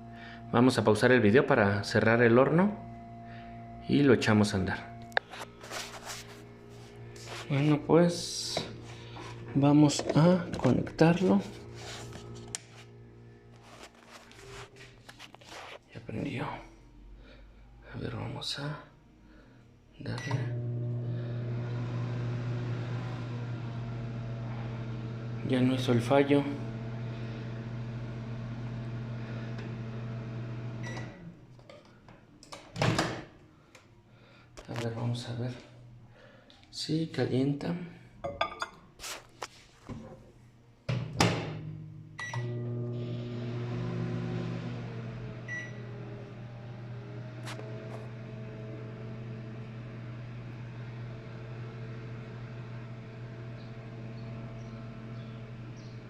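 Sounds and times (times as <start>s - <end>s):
microwave oven humming: 0.0s - 5.6s, 7.9s - 13.8s, 19.4s - 31.4s, 41.2s - 56.0s.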